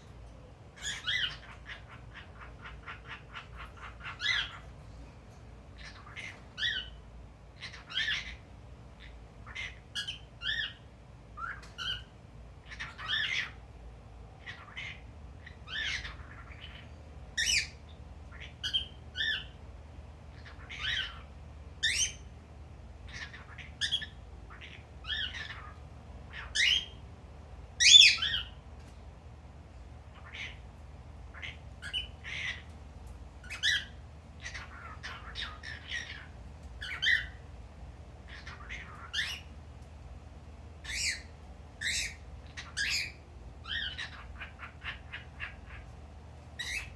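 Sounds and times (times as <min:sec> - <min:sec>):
cockatiel chirps and squawks: 0:00.8 - 0:04.7, 0:05.8 - 0:07.0, 0:07.6 - 0:08.4, 0:09.0 - 0:13.6, 0:14.4 - 0:19.6, 0:20.3 - 0:22.2, 0:23.1 - 0:27.0, 0:27.8 - 0:28.6, 0:30.1 - 0:30.6, 0:31.3 - 0:32.8, 0:33.4 - 0:37.4, 0:38.3 - 0:39.5, 0:40.8 - 0:46.0, 0:46.6 - 0:46.9.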